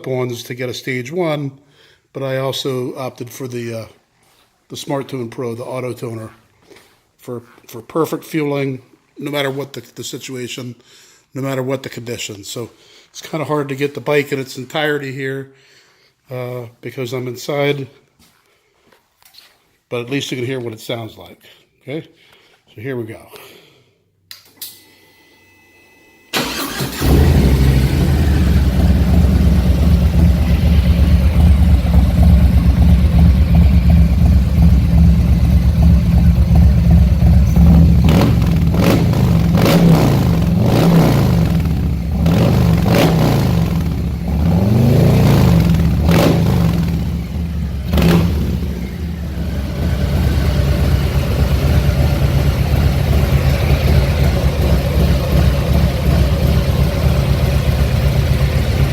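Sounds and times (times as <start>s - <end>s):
motorcycle engine idling and revving: 26.6s - 58.9s.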